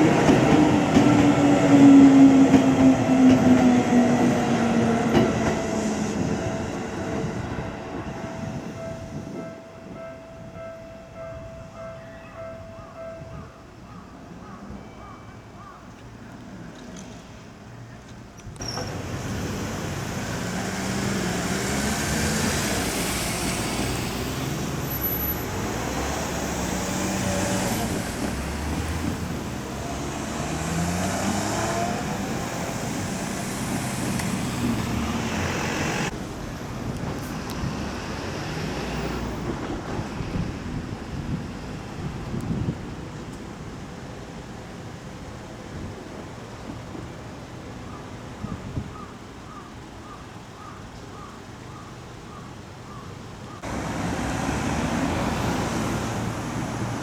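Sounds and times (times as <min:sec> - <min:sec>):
road noise: 0:00.0 - 0:14.8, 0:15.4 - 0:57.0
traffic engines pulling away: 0:18.4 - 0:43.6, 0:53.6 - 0:57.0.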